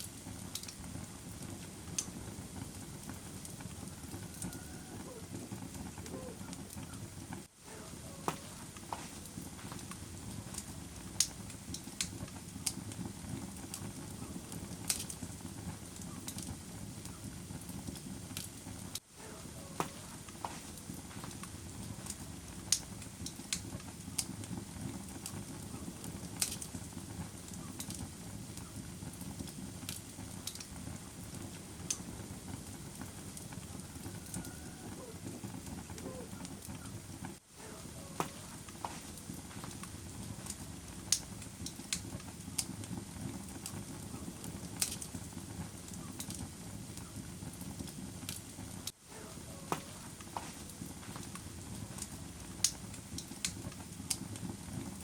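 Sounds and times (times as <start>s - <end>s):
fire crackling and popping: 0.0s - 55.0s
wood fire flames rumbling: 0.0s - 55.0s.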